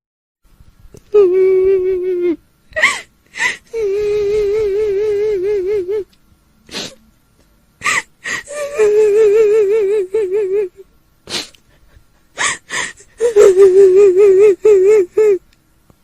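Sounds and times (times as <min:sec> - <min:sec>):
woman's quavering wailing cry: 0:01.1 - 0:06.1, 0:07.8 - 0:10.8, 0:12.4 - 0:15.4.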